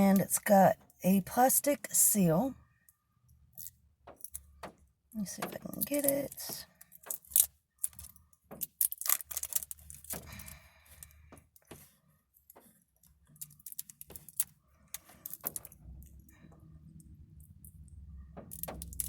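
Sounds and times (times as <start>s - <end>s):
plastic crinkling: 7.0s - 10.2s.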